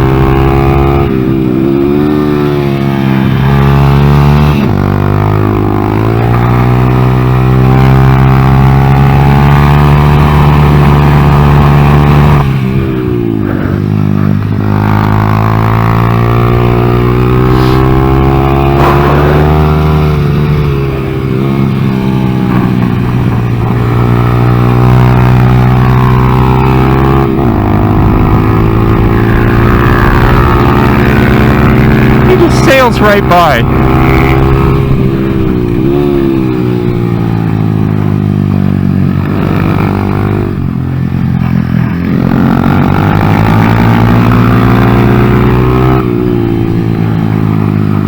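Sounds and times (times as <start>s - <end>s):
motorcycle engine revving: 0.0s - 48.0s.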